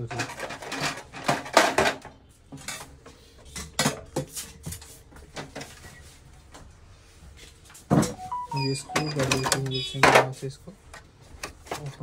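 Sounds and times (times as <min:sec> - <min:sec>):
plastic printer parts clattering: 0:00.0 - 0:02.8.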